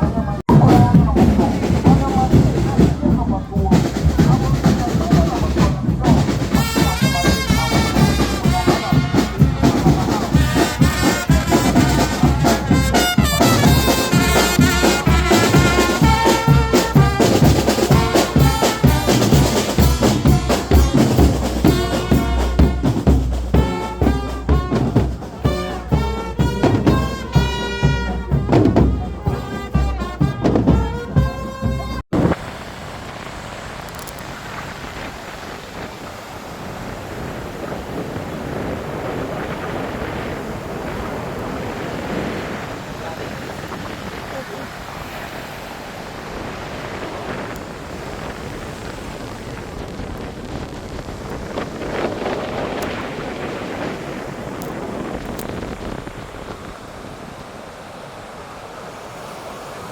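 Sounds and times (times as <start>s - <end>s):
brass band playing: 0.0s - 32.3s
steady drumbeat: 0.0s - 32.4s
wind-like rush: 0.0s - 59.9s.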